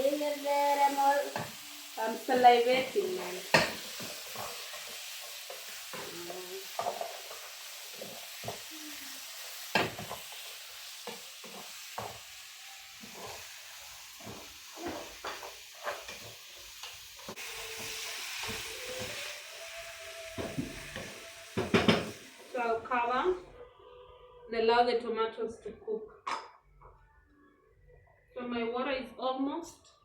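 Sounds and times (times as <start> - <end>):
meat sizzling in a pot: 0.0 - 23.3.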